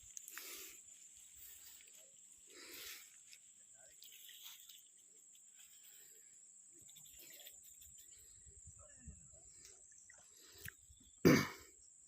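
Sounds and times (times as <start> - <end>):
soft rustles: 0.0 - 8.2
crickets chirping: 0.0 - 12.0.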